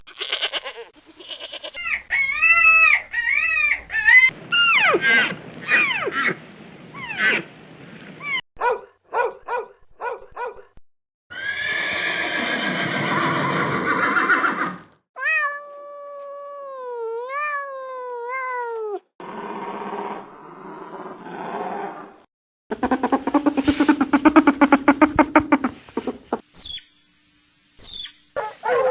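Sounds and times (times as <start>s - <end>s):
cat call: 12.4s - 19.0s
short evenly spaced animal calls: 27.7s - 28.3s.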